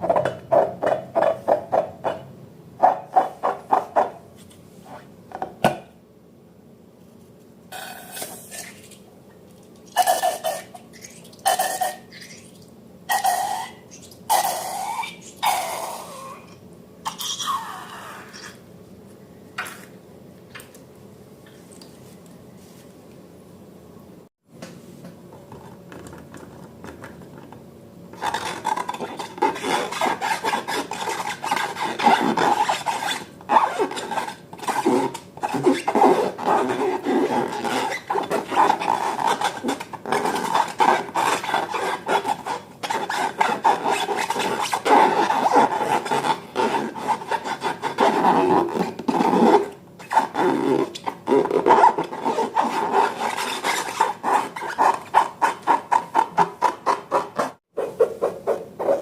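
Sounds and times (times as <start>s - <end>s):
rubbing slime and balloons by hand: 28.2s - 59.0s.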